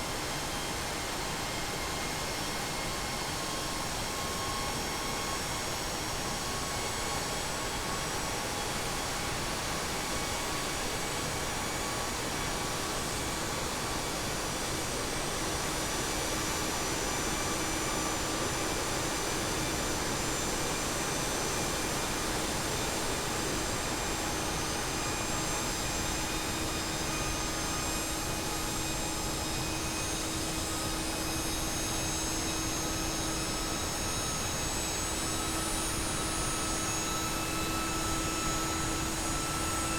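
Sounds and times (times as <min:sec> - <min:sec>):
jet engine roar and whine: 0:00.0 - 0:39.9.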